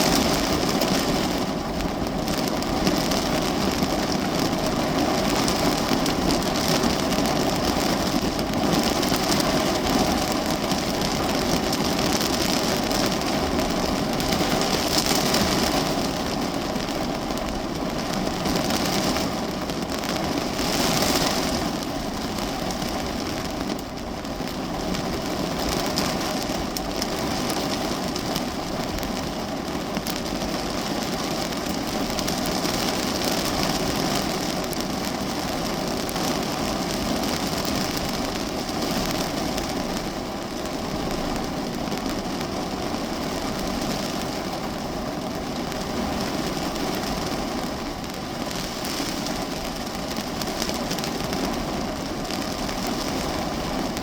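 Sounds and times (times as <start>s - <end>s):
rain on a car roof: 0.0s - 54.0s.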